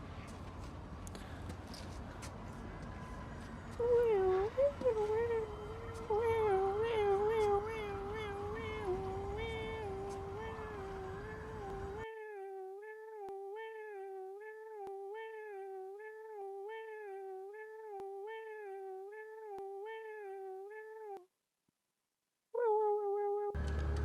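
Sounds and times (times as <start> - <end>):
faint regular clicks: 23.6 - 24.0.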